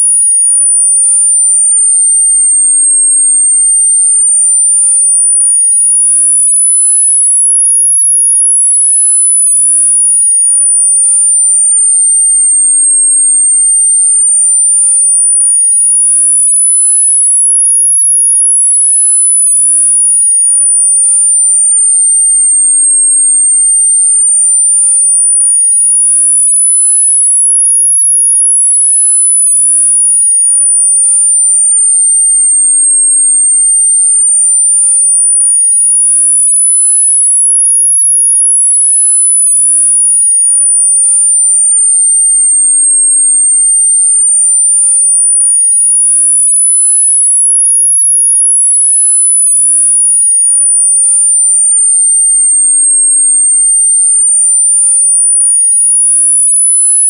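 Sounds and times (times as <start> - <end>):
high-pitched sine tone sweeping: 0.0 - 57.0.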